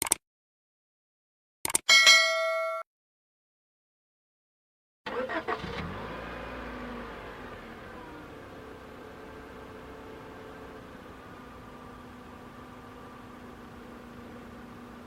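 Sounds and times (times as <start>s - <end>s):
short ringing tone: 1.9s - 2.8s
car engine starting and running: 5.1s - 15.0s.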